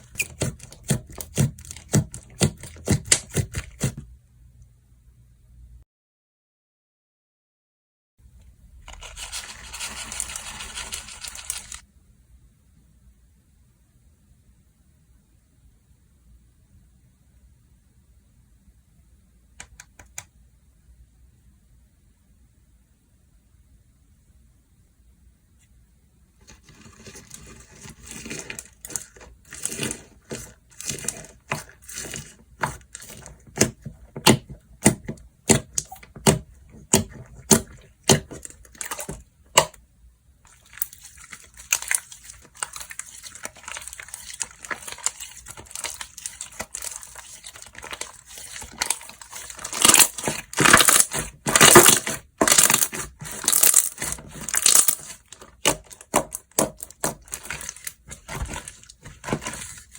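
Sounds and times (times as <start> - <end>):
slime squishing and popping: 40.5 - 59.6.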